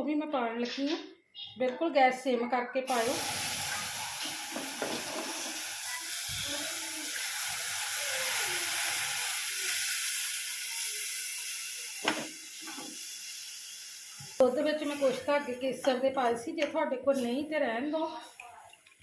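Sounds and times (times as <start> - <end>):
milk pouring into hot pan: 2.9 - 14.4
sizzling and hissing: 2.9 - 15.6.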